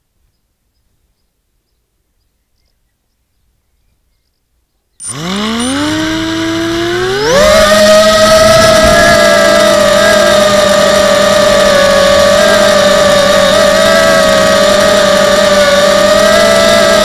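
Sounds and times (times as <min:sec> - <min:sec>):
quadcopter motors whining: 0:05.0 - 0:17.0.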